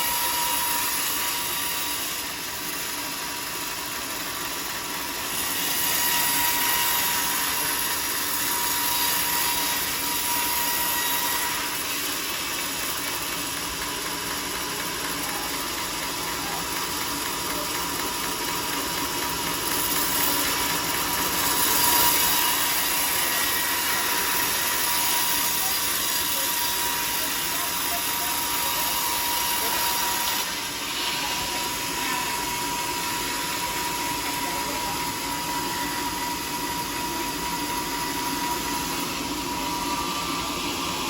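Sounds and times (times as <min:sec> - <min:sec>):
sawmill machinery whining: 0:00.0 - 0:41.0.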